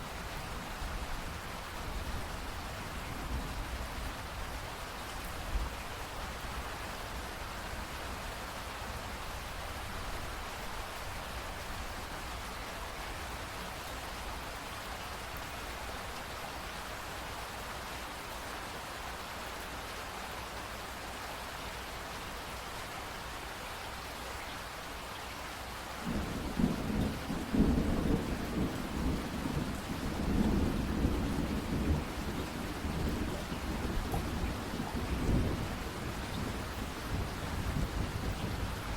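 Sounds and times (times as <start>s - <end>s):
steady rain: 0.0s - 38.9s
rumble of thunder: 26.0s - 38.9s.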